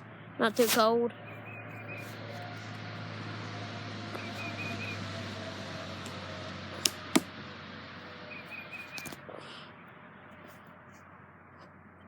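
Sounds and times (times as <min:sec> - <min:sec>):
sharp clicks: 0:06.8 - 0:07.3.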